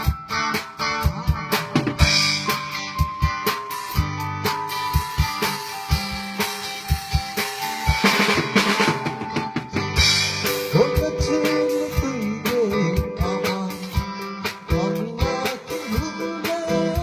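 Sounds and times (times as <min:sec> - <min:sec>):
drum kit beat: 0:00.0 - 0:17.0.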